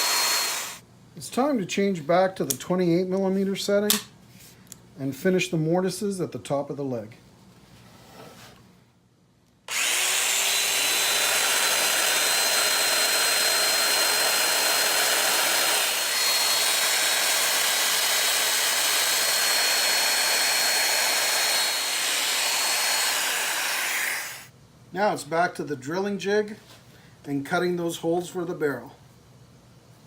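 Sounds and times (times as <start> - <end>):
power joiner whining: 0.0 - 0.8, 9.7 - 24.5.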